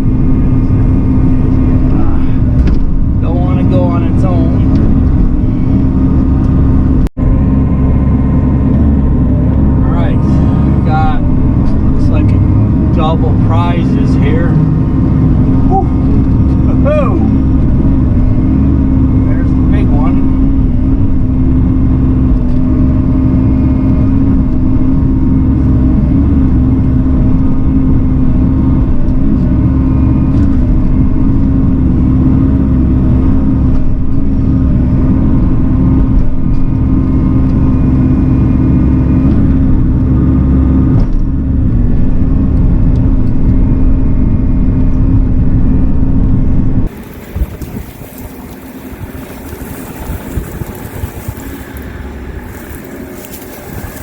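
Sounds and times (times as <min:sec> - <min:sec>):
diesel excavator engine running: 0:00.0 - 0:54.0
wind on microphone: 0:41.7 - 0:54.0.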